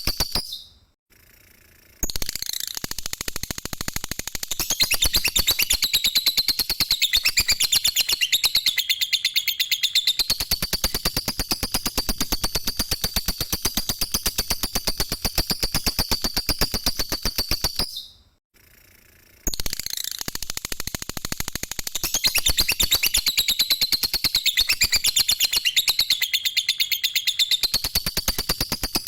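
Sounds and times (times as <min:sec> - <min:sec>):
lovebird chattering trill: 0:04.3 - 0:18.1, 0:22.0 - 0:29.0.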